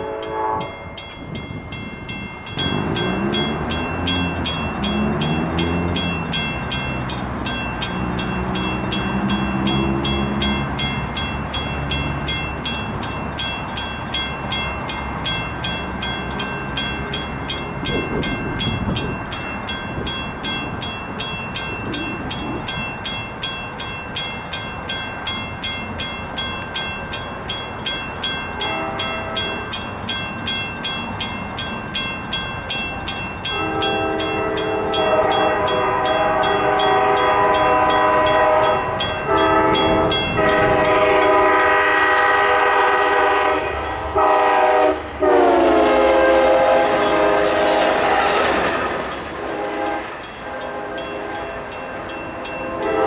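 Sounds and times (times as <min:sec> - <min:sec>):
multi-note train horn: 0:00.0 - 0:00.9, 0:28.6 - 0:29.6, 0:33.5 - 0:51.7, 0:52.6 - 0:53.0
crossing bell ringing: 0:00.0 - 0:53.0
diesel locomotive rumbling: 0:00.0 - 0:53.0.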